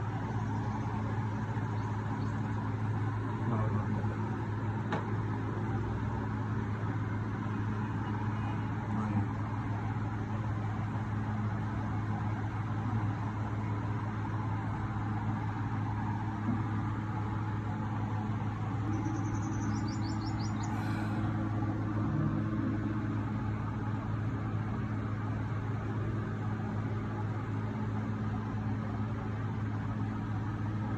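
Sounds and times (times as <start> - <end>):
car engine running: 0.0 - 30.9
bird chirping: 1.6 - 2.5, 18.8 - 21.3.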